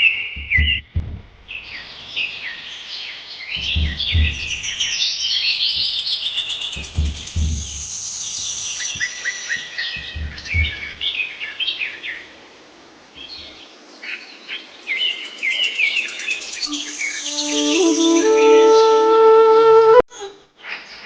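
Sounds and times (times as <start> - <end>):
small birds chirping: 0.0 - 12.2
low thumps: 0.4 - 2.4, 3.6 - 9.2, 9.9 - 11.2
music with held notes: 16.7 - 20.0.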